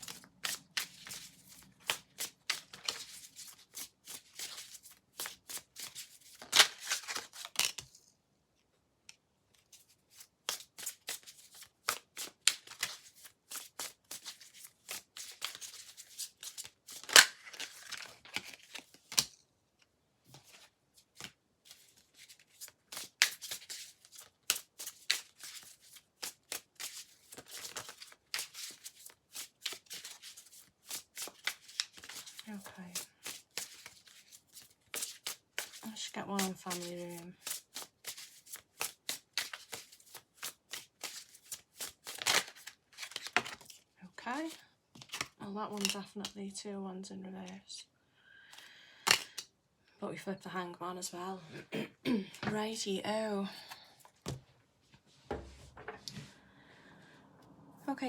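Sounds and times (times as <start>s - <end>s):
cards being shuffled: 0.0s - 8.0s, 9.6s - 19.4s, 20.3s - 43.8s, 44.4s - 46.0s, 48.5s - 49.4s.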